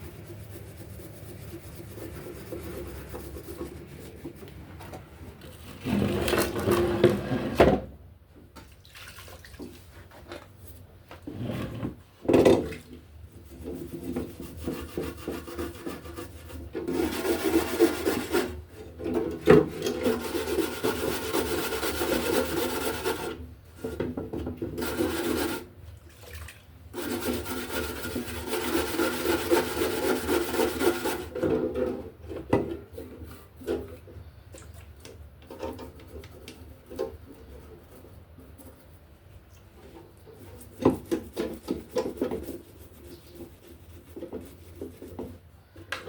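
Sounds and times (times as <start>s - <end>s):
abrasive scrubbing on metal: 0.0s - 4.5s.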